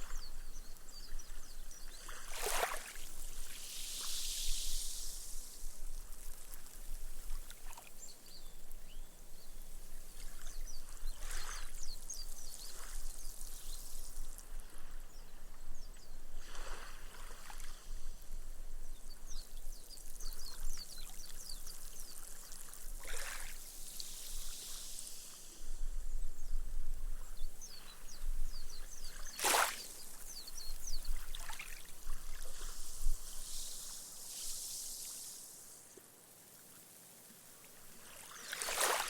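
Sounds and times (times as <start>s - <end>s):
gentle waves washing up sand: 0.0s - 8.7s, 19.4s - 25.8s, 27.6s - 39.0s.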